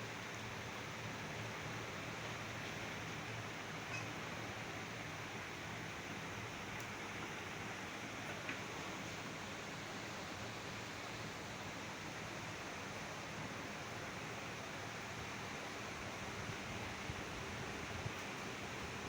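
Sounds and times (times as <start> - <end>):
steady background hiss: 0.0 - 19.0
faint ticks: 6.8 - 7.3.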